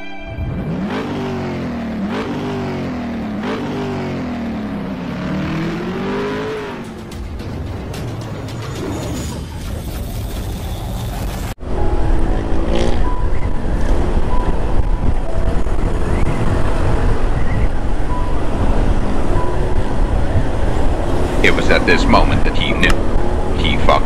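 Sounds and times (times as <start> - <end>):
motorcycle engine and road noise: 0.4 - 24.0
wind rushing over microphone: 11.6 - 23.6.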